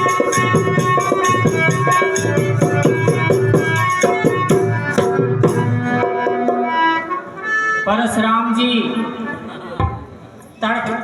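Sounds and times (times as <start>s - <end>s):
drums beating fast: 0.0s - 6.8s
held melodic tones: 0.0s - 10.8s.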